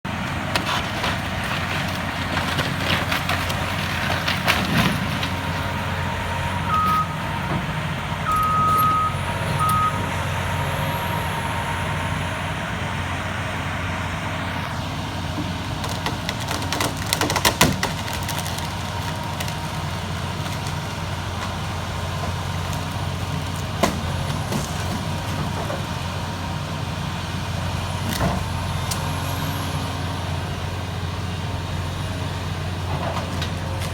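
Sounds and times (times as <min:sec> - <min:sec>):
diesel engine running: 0:00.0 - 0:33.9
debris crashing and falling: 0:00.4 - 0:09.8, 0:14.7 - 0:26.4
short high beeps: 0:08.3 - 0:10.1.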